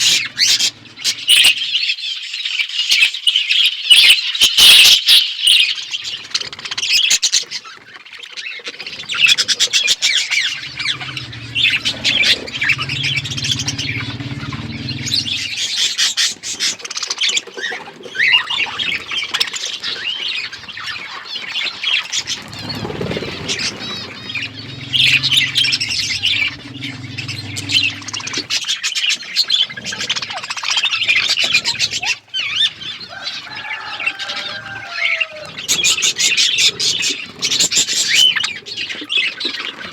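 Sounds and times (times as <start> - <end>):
bird squawks: 0.0 - 1.9, 8.8 - 38.9
budgerigars chattering and chirping: 0.0 - 7.8, 8.4 - 39.9
low steady rumble: 10.3 - 15.8, 22.3 - 28.6.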